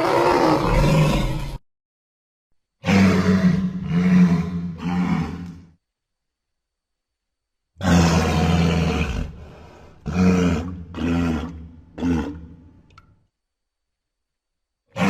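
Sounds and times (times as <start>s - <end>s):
creature deep roar: 0.0s - 1.6s, 2.8s - 5.7s, 7.8s - 12.8s.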